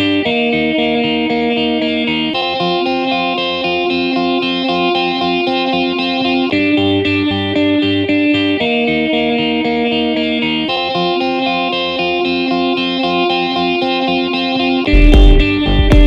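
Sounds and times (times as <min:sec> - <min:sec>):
plucked guitar-like riff: 0:00.0 - 0:16.0
instrumental hip-hop beat: 0:10.7 - 0:16.0.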